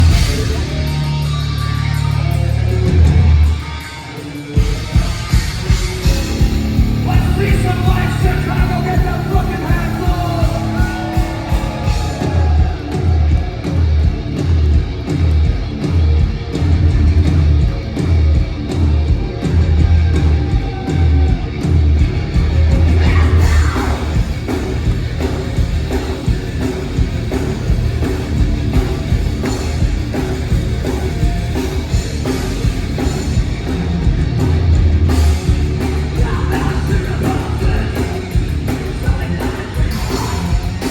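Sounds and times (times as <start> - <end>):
heavy bass and kick drum: 0.0 - 4.0, 4.6 - 40.9
live rock band playing: 0.0 - 40.9
person singing and shouting: 6.8 - 13.4, 22.8 - 24.2, 36.2 - 38.2.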